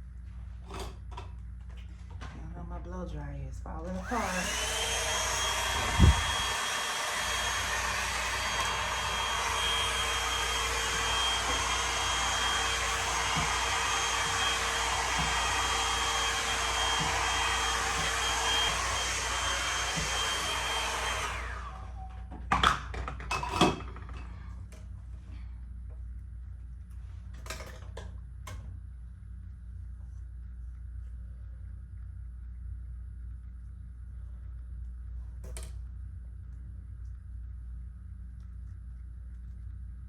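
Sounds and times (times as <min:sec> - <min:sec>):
hair dryer blowing with high whine: 0:03.9 - 0:24.3.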